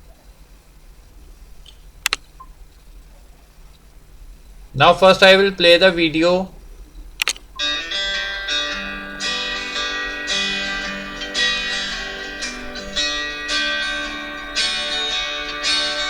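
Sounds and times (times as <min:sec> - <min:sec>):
strummed guitar chords: 0:07.6 - 0:16.0.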